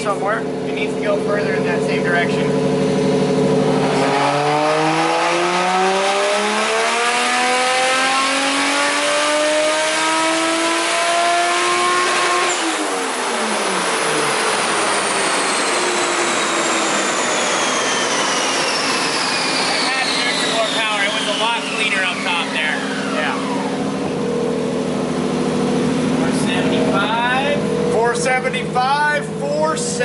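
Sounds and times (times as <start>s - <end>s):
turbocharged engine revving: 0.0s - 30.0s
turbo whistle: 15.2s - 23.8s.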